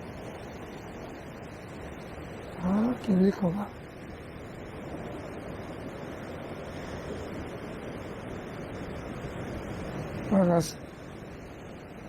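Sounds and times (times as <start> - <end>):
surf washing against rocks: 0.0 - 12.0
wind buffeting microphone: 0.0 - 12.0.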